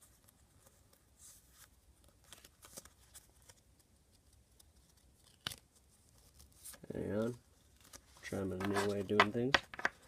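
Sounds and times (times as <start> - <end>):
light handling rustles and taps: 8.5 - 10.0.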